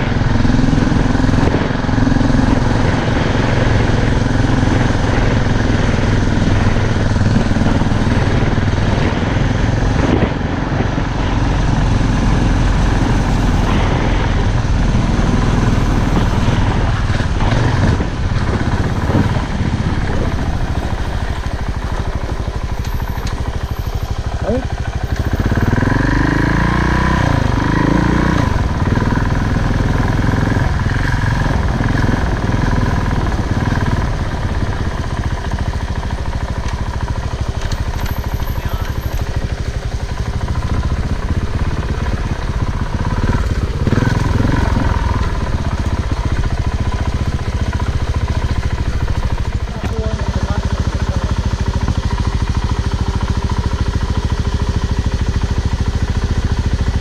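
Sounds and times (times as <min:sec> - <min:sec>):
motorcycle engine rumbling: 0:00.0 - 0:57.0.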